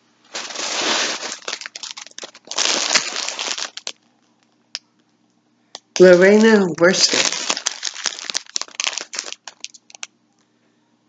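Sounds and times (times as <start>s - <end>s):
plastic packaging crinkling: 0.3s - 4.5s, 5.8s - 10.1s.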